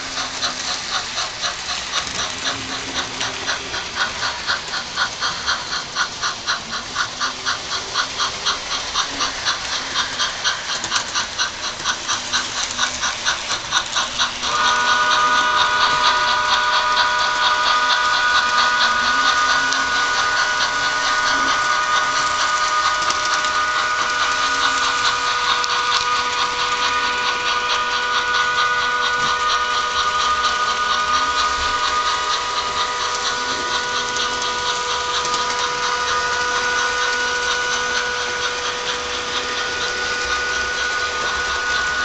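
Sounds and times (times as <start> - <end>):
steam locomotive chuffs: 0.0 - 42.0
steam whistle tone: 14.4 - 42.0.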